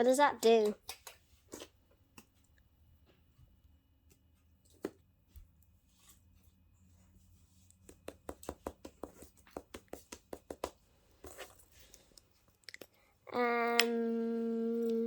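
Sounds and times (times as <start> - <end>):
faint rustle of handling: 5.4 - 7.9.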